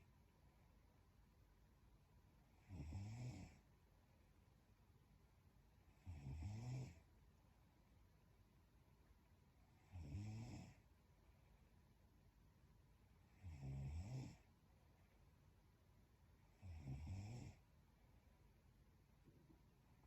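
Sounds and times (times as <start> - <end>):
woman snoring quietly: 2.6 - 3.6, 6.0 - 7.1, 9.8 - 10.8, 13.3 - 14.5, 16.5 - 17.6.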